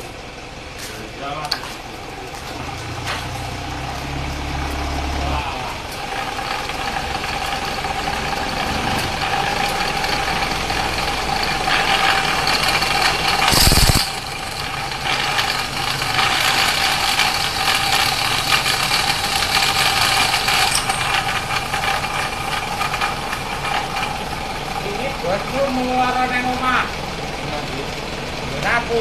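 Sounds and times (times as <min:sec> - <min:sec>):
car differential whine: 0:00.0 - 0:29.0
loud rush: 0:05.2 - 0:15.4.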